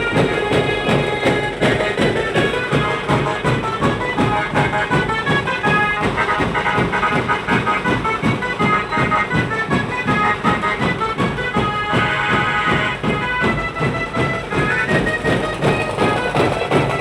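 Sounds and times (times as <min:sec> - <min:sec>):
fast drum beat: 0:00.0 - 0:09.1, 0:13.8 - 0:17.0.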